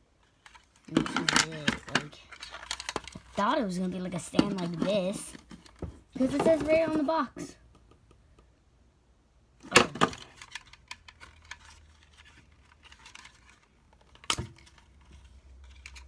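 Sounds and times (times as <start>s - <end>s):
plastic clicks and rattles: 0.2s - 3.4s, 9.6s - 16.0s.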